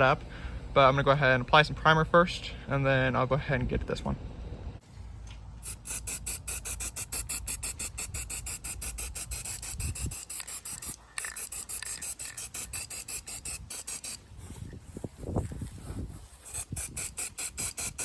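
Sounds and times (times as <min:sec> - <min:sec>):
spray can ball clacking: 0:05.7 - 0:14.2.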